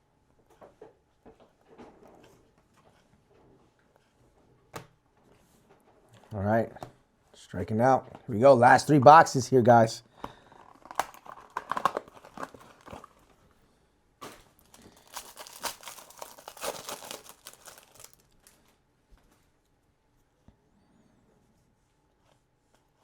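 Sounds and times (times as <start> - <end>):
wrapper crackling and tearing: 10.6 - 13.3, 14.2 - 18.8.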